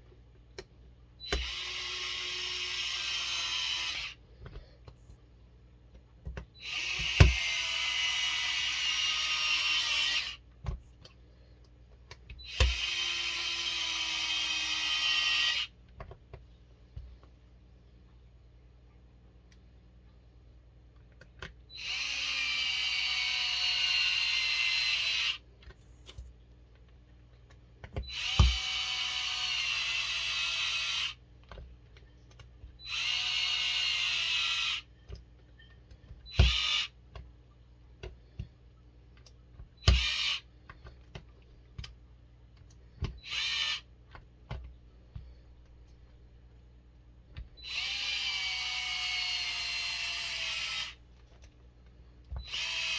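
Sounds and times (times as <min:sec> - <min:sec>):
electric screwdriver whirring: 0:01.2 - 0:04.2, 0:06.6 - 0:10.4, 0:12.4 - 0:15.7, 0:21.8 - 0:25.4, 0:28.0 - 0:31.2, 0:32.8 - 0:34.9, 0:36.3 - 0:36.9, 0:39.8 - 0:40.4, 0:43.2 - 0:43.8, 0:47.6 - 0:51.0, 0:52.4 - 0:52.9.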